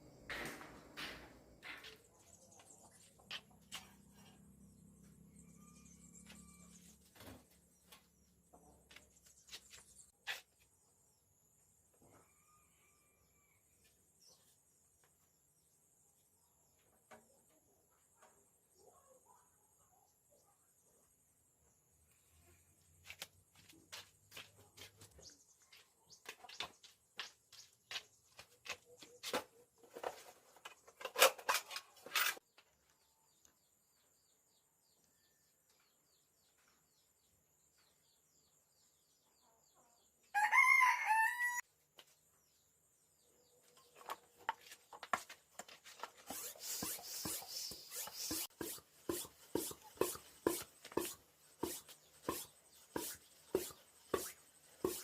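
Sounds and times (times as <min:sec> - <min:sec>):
clicks and scraping on bicycle: 0:29.2 - 0:32.6
rooster crowing: 0:40.3 - 0:41.6.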